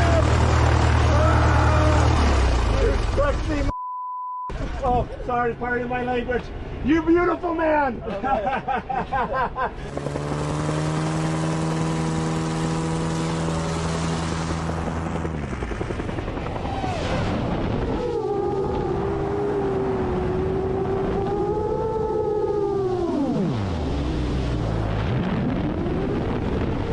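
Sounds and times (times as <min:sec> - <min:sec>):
propeller aircraft engine: 0:00.0 - 0:03.7, 0:09.8 - 0:21.1.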